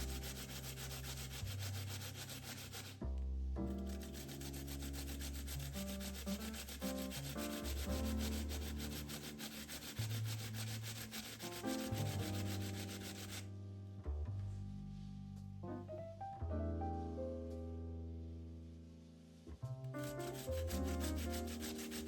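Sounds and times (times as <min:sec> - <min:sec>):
fast scratching noise: 0:00.0 - 0:03.0, 0:03.7 - 0:13.4, 0:20.0 - 0:22.0
music with low bass line: 0:13.5 - 0:20.0.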